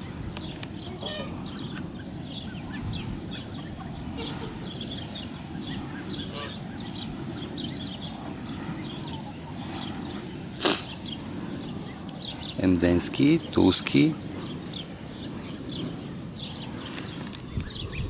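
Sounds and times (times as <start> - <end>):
goslings and ducklings peeping: 0.8 - 10.0.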